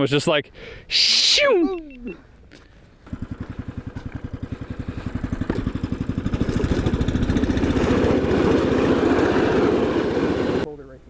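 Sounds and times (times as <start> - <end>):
small gasoline engine revving: 3.0 - 10.7.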